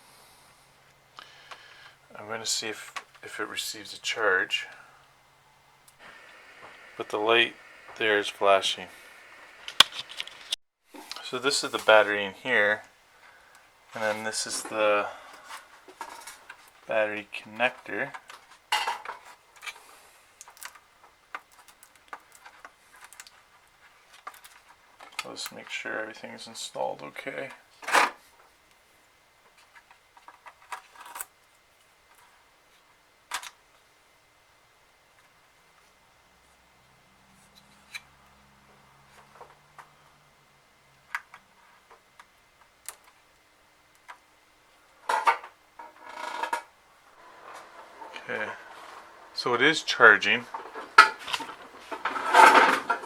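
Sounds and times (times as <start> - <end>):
laptop parts scraping: 6.0 - 12.1, 37.3 - 38.1
small clicks of plastic and metal: 20.4 - 23.4, 42.2 - 44.2.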